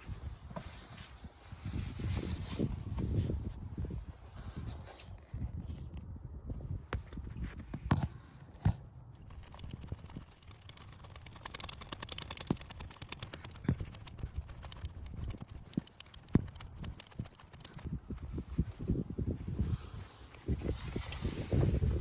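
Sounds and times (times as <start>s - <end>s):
rapid fine clicking: 9.2s - 18.3s.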